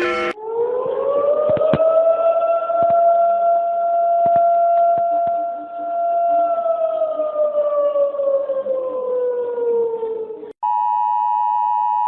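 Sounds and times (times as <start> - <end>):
emergency siren winding down: 0.0 - 0.4.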